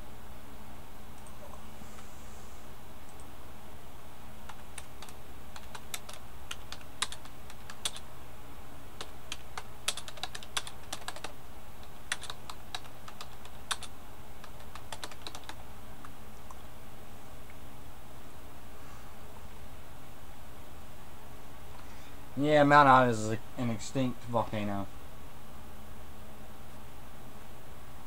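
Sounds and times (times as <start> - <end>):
steady low hum: 0.0 - 28.0
keyboard typing: 4.5 - 8.0, 9.0 - 16.1.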